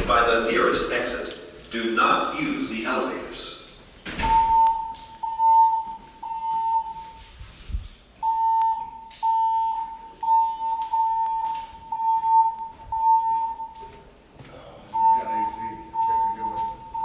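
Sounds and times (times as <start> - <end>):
pulsing fire alarm tone: 4.2 - 7.3, 8.2 - 13.9, 14.9 - 17.0.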